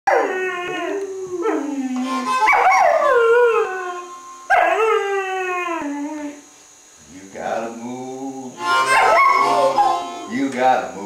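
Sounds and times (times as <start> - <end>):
dog howling: 0.1 - 6.4, 8.8 - 10.2.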